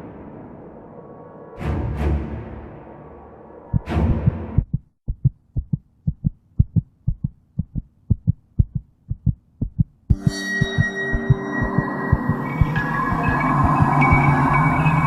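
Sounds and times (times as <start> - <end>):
heartbeat double thump: 3.7 - 10.0, 10.7 - 14.4
humming musical drone: 10.1 - 15.0
swelling musical hit: 10.1 - 15.0.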